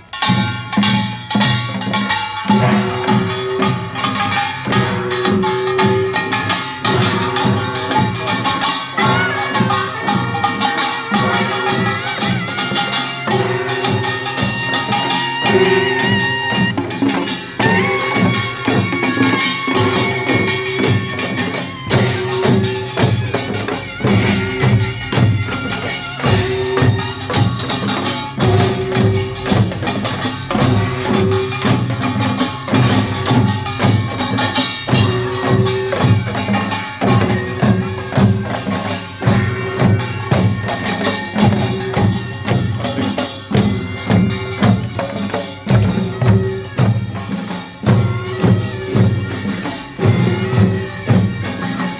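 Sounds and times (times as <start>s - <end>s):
drums and small gongs: 0.0s - 51.9s
held pitched tones: 8.9s - 26.7s.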